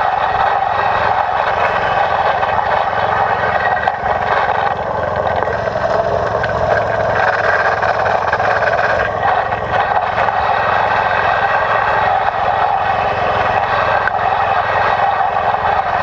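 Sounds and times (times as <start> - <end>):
walking tractor engine running: 0.0 - 16.0.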